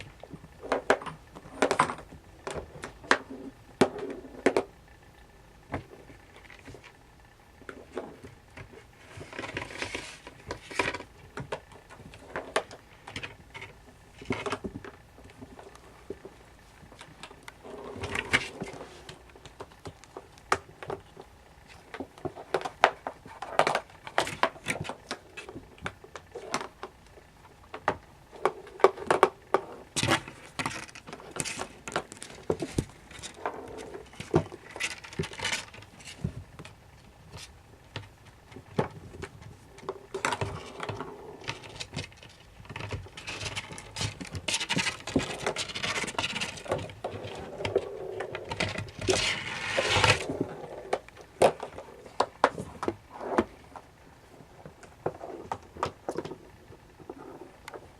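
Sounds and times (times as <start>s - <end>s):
kittens knocking and scrabbling: 27.6s - 57.9s.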